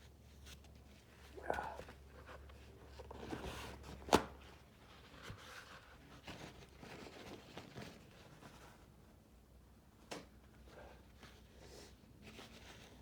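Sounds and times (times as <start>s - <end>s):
faint rustling and handling: 0.0s - 9.2s, 10.4s - 13.0s.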